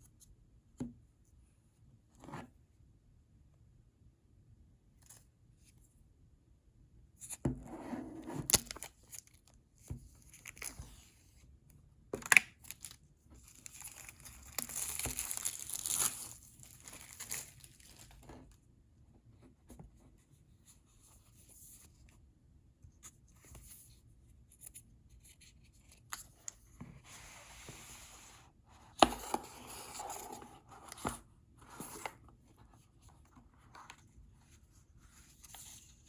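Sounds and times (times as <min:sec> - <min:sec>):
packaging handling noises: 0:12.6 - 0:18.3
packaging tearing and crinkling: 0:13.6 - 0:18.2.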